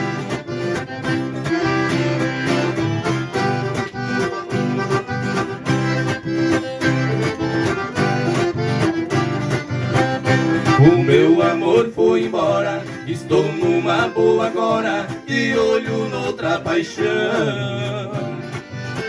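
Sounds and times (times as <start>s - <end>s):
piano accordion lead: 0.0s - 17.0s, 18.0s - 19.0s
strummed guitar: 0.0s - 19.0s
steady beat: 10.6s - 11.5s.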